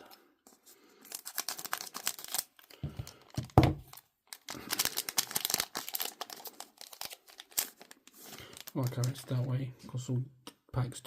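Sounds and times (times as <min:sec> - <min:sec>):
wrapper tearing and crinkling: 0:01.0 - 0:09.4.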